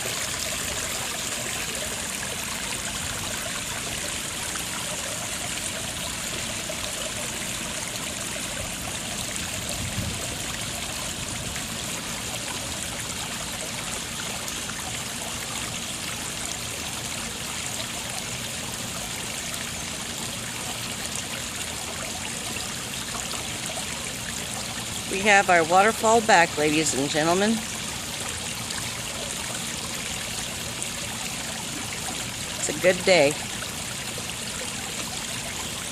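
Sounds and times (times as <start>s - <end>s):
waterfall splashing over rocks: 0.0s - 25.0s.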